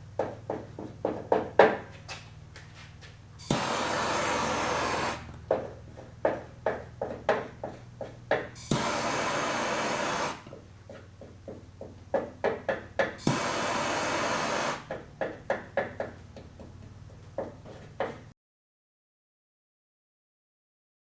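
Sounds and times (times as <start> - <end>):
torch flame hissing: 3.4 - 5.4, 8.6 - 10.5, 13.2 - 14.9
torch ignition click: 3.4 - 5.4, 8.6 - 10.5, 13.2 - 14.9.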